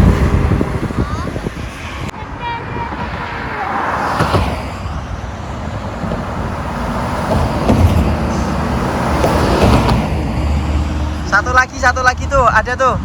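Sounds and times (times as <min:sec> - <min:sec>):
heavy vehicle engine rumble: 0:00.0 - 0:12.4
road traffic passing: 0:00.0 - 0:13.0.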